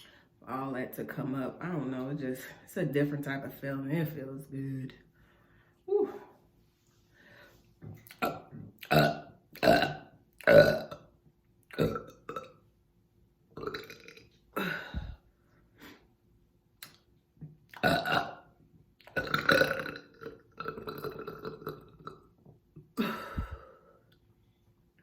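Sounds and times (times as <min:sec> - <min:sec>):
person burping: 0:08.1 - 0:11.1, 0:11.7 - 0:12.6, 0:13.6 - 0:15.2, 0:17.7 - 0:24.0.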